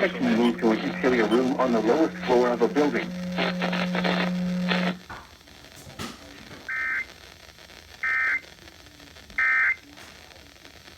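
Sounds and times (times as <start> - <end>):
person reading warning: 0.0 - 4.3.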